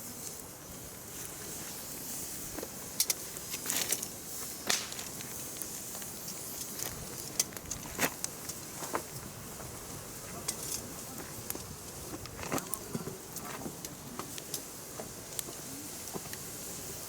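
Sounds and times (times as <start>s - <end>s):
campfire crackling: 0.0s - 17.0s.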